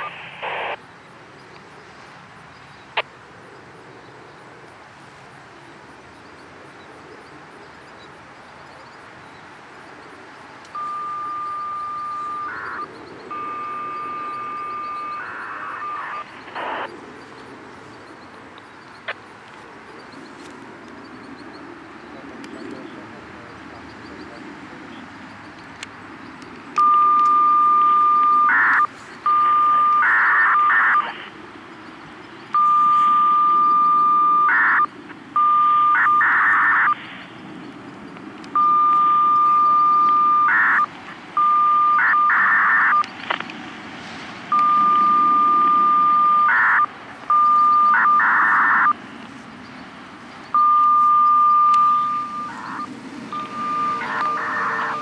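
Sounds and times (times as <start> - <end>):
steady radio beep: 0.0 - 0.8, 10.7 - 19.3, 26.3 - 31.4, 32.5 - 37.8, 38.5 - 43.4, 44.5 - 49.0, 50.4 - 55.0
data warble: 10.8 - 16.9, 32.6 - 37.3, 50.6 - 55.0.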